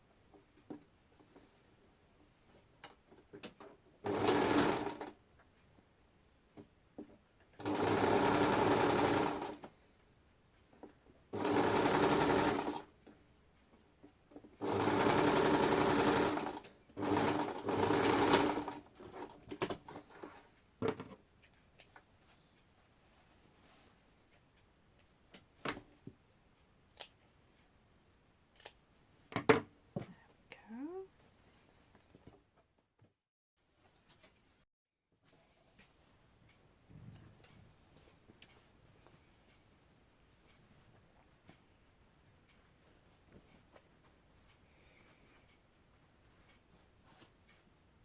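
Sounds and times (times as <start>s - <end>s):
sewing machine stitching: 4.0s - 5.2s, 7.6s - 9.7s, 11.4s - 12.9s, 14.6s - 20.4s.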